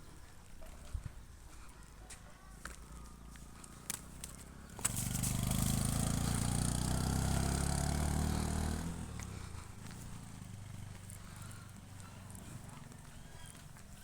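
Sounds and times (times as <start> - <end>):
vehicle engine running close by: 2.8 - 14.0.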